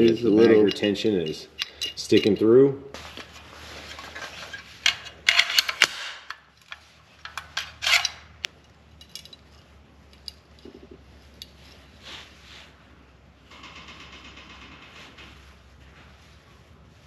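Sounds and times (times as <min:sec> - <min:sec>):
metal gun parts clicking: 0:00.0 - 0:02.4, 0:03.9 - 0:10.7.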